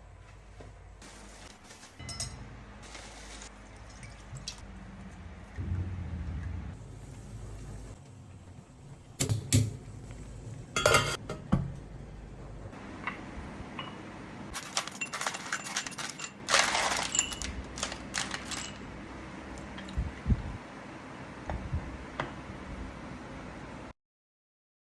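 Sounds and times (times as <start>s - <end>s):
dishes and utensils clinking: 2.0s - 2.5s, 10.8s - 11.8s, 14.6s - 17.6s.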